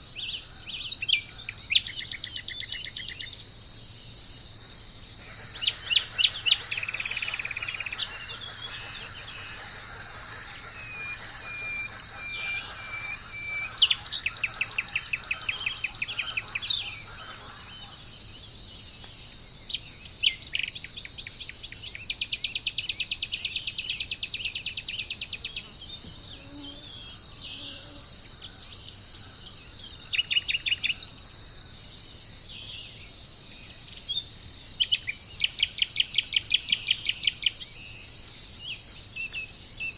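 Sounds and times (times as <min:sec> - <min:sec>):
high insect drone: 0:00.0 - 0:39.9
bird trills: 0:05.2 - 0:18.2
wild birds calling: 0:05.2 - 0:18.6.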